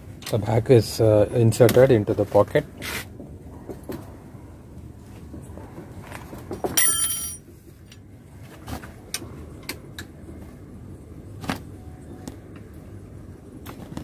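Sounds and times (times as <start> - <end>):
metal parts clicking and knocking: 6.8 - 7.4
metallic ring: 6.8 - 7.4.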